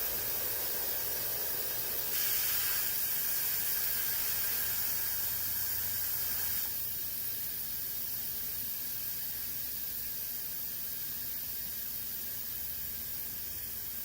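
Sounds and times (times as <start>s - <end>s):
air compressor hissing: 0.0s - 14.0s.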